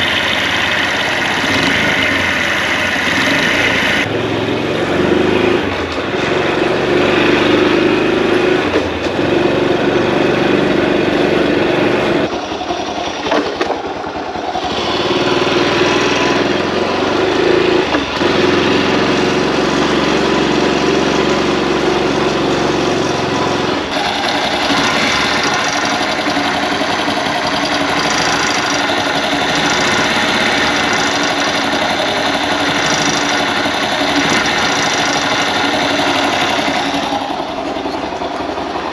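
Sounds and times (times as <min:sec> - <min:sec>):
abnormal noise under motorcycle: 0:00.0 - 0:38.9
motorcycle engine idling: 0:00.0 - 0:38.9.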